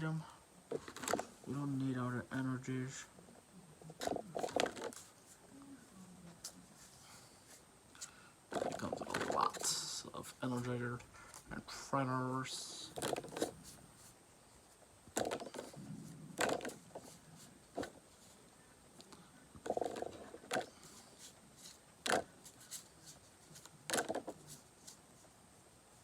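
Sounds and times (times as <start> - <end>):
cards rustling: 0.7 - 2.0, 3.8 - 5.4, 6.3 - 11.7, 12.4 - 25.3.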